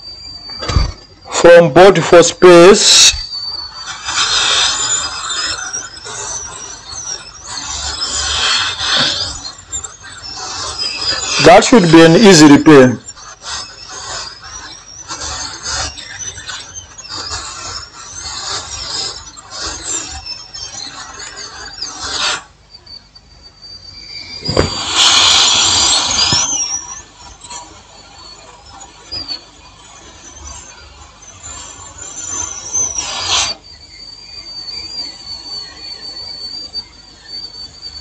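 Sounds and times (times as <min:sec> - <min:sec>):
hot-air station hissing and squealing: 0:00.0 - 0:38.0.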